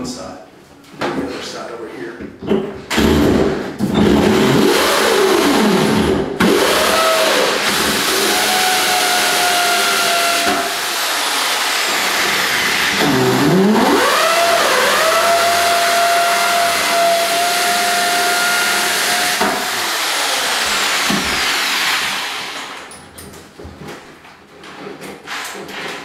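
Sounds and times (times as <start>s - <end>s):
hammer drill boring into wall: 2.9s - 22.9s.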